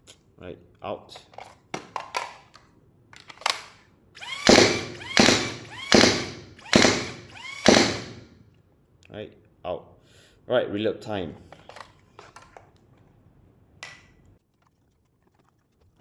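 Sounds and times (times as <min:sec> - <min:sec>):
foam dart blaster firing: 0:04.4 - 0:08.2.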